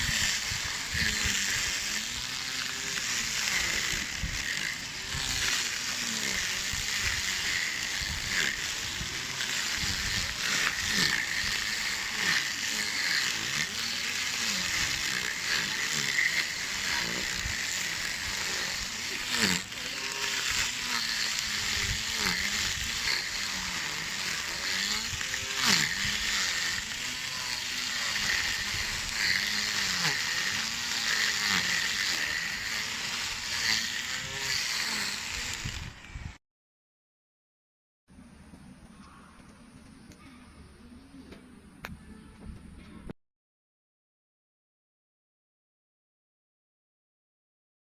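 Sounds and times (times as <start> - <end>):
lawn mower cutting grass: 0.0 - 36.4.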